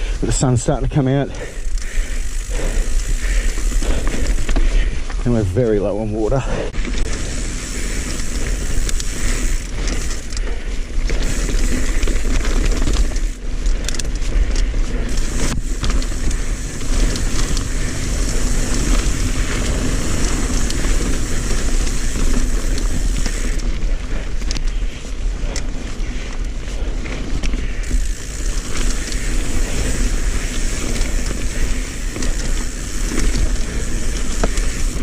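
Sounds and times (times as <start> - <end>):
bike clicks and rattles: 0.0 - 5.8, 6.4 - 35.0
wind rumbling on microphone: 6.7 - 35.0
tyres rolling over dirt: 6.8 - 24.7, 26.9 - 35.0.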